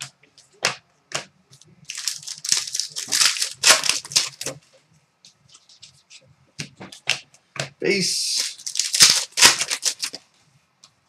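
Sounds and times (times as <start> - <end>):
cards rustling and crinkling: 1.5 - 4.7, 8.0 - 10.3.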